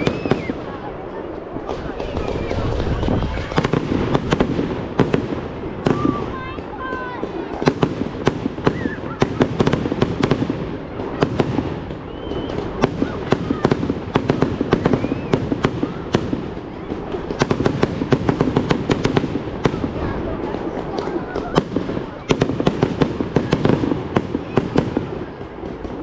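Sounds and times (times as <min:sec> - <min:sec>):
fireworks bursting: 0:00.0 - 0:26.0.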